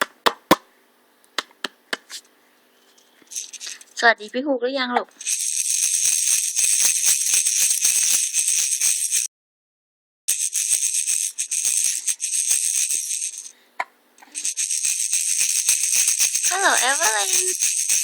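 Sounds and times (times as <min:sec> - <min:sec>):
rattle shaken fast: 0:03.2 - 0:04.1, 0:05.0 - 0:09.3, 0:10.3 - 0:13.6, 0:14.2 - 0:18.0.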